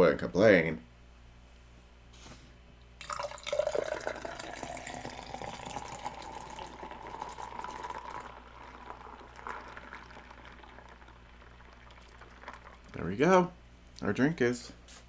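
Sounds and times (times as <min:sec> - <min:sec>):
drink pouring into cup of ice: 0:03.0 - 0:13.1.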